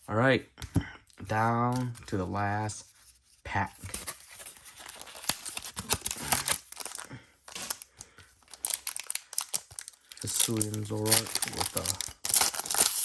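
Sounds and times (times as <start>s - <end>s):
foil wrapper tearing and crinkling: 4.8s - 13.0s.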